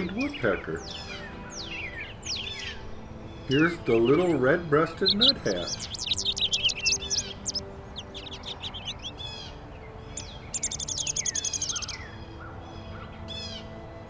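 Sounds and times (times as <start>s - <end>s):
songbirds chirping: 0.0s - 14.0s
fast high bird trill: 5.0s - 9.5s, 10.1s - 12.1s.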